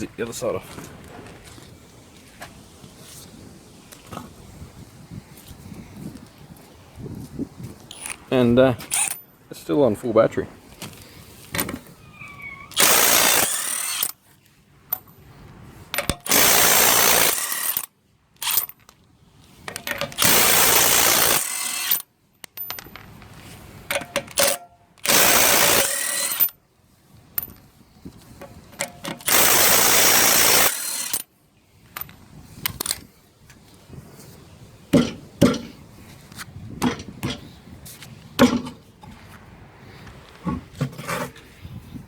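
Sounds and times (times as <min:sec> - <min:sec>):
impact wrench hammering: 0:08.9 - 0:09.2, 0:12.8 - 0:14.1, 0:23.9 - 0:26.5, 0:28.8 - 0:31.2
small clicks and knocks: 0:19.7 - 0:20.2.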